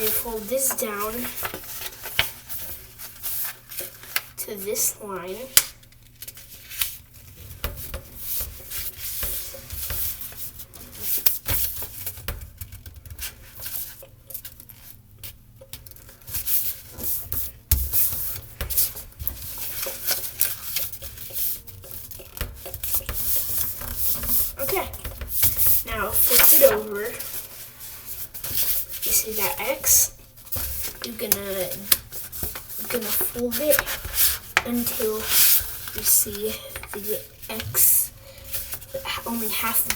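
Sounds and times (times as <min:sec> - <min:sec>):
paper being folded: 0:00.0 - 0:04.7, 0:05.4 - 0:07.5, 0:11.0 - 0:39.9
fingers rubbing paper crease: 0:19.6 - 0:39.9.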